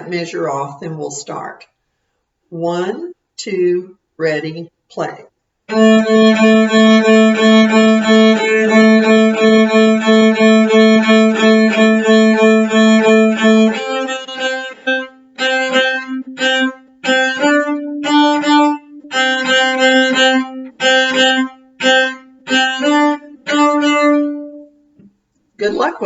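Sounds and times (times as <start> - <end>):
cello bowed notes: 5.7 - 25.1.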